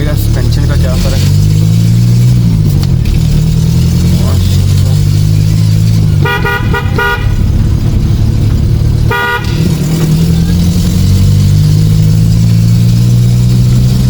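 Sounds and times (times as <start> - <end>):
car engine running: 0.0 - 14.0
car horn toots: 6.2 - 7.6, 9.0 - 9.9.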